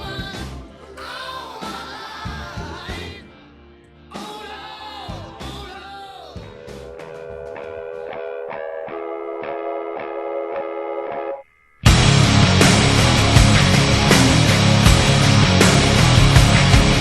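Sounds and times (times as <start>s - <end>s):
song with singing over a beat: 0.0s - 3.3s, 4.1s - 6.5s
guitar quick repeated notes: 6.9s - 17.0s.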